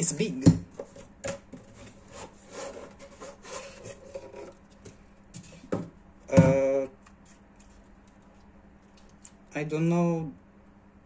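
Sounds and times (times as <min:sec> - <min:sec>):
packaging scraping and rubbing: 0:01.6 - 0:04.6.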